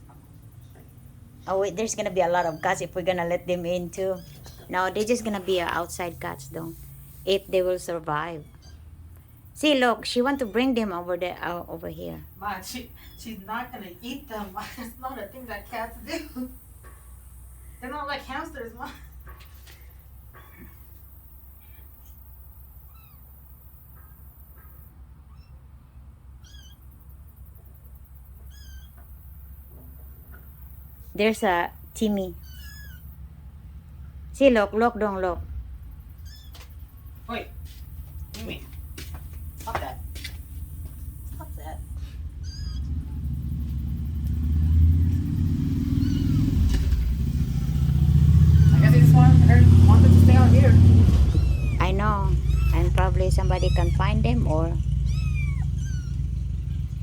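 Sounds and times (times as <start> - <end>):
vehicle engine rumbling: 0.0 - 57.0
kittens mewing: 2.1 - 5.8, 20.3 - 23.6, 26.4 - 27.0, 28.4 - 29.0, 32.3 - 33.2, 36.2 - 36.6, 41.4 - 43.9, 45.8 - 47.1, 48.3 - 49.3, 50.0 - 57.0
steady low hum: 32.9 - 57.0.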